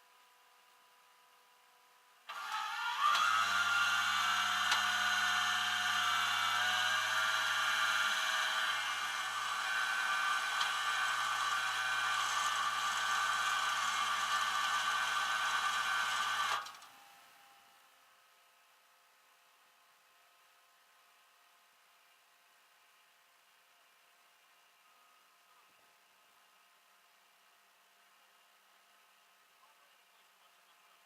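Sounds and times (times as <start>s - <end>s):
electric motor whirring: 2.3s - 16.8s.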